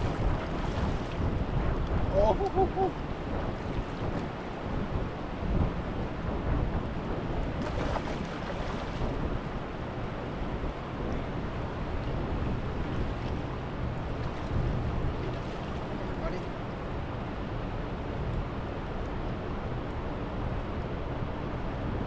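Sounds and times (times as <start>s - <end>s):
fast river current rushing: 0.0s - 6.4s
wind buffeting microphone: 0.0s - 22.0s.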